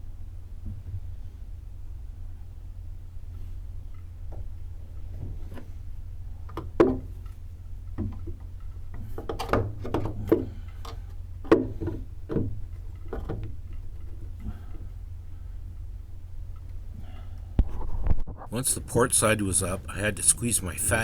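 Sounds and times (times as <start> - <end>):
steady low hum: 0.0 - 21.0
knocks and clunks on plywood: 6.5 - 7.2, 11.4 - 13.6.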